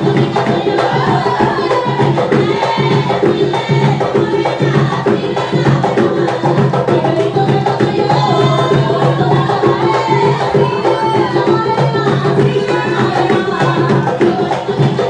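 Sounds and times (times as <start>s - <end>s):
hand drums beating fast rhythm: 0.0s - 15.0s.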